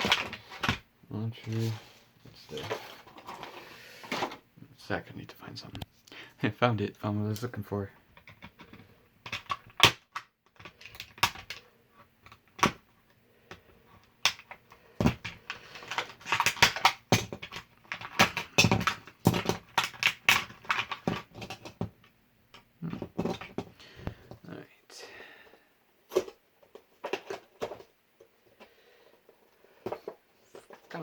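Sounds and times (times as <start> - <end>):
plastic packaging clicks and crackles: 8.2 - 11.6, 13.5 - 24.4.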